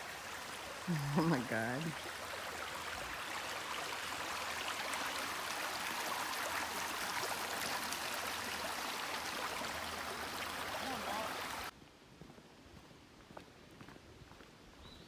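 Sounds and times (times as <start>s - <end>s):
waterfall rushing: 4.7s - 11.7s.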